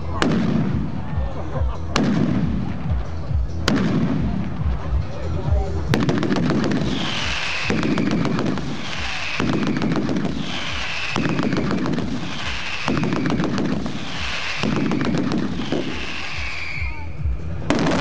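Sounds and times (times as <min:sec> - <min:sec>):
firecracker barrage bangs: 0:00.1 - 0:01.0, 0:02.0 - 0:03.0, 0:03.6 - 0:04.9, 0:05.9 - 0:16.8, 0:17.6 - 0:18.0
high falling whistle: 0:06.9 - 0:13.4, 0:15.5 - 0:17.1.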